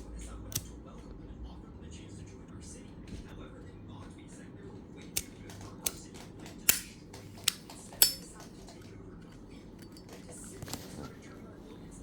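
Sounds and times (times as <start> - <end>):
lighter clicking metallically: 0.5 - 0.7, 6.6 - 8.3.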